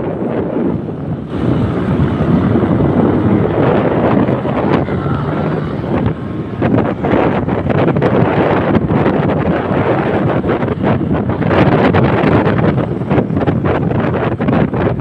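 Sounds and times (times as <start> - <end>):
wind buffeting microphone: 0.0 - 15.0
machine running loudly: 1.1 - 8.6.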